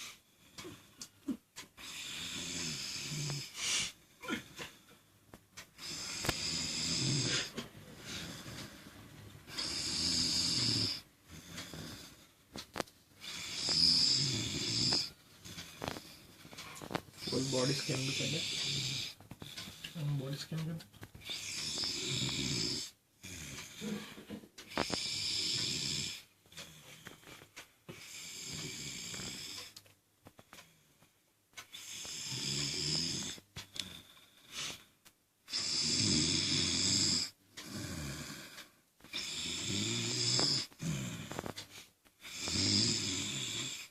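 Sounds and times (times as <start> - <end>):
quiet breathing: 0.0 - 35.6, 36.6 - 43.9
man snoring: 1.8 - 4.4, 5.8 - 8.8, 9.5 - 12.2, 13.2 - 16.0, 17.2 - 19.2, 21.2 - 26.8, 28.0 - 29.8, 31.8 - 34.1, 35.5 - 41.5, 42.2 - 43.9.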